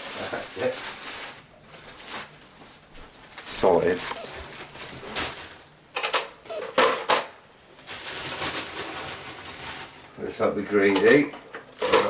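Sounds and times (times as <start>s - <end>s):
plastic container clattering: 10.8s - 12.0s.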